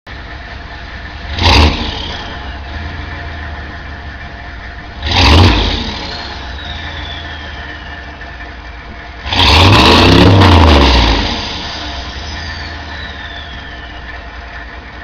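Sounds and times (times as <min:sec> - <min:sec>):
diesel engine idling and revving: 0:00.0 - 0:15.0
turbo whistle falling in pitch: 0:06.2 - 0:08.4, 0:12.2 - 0:14.3.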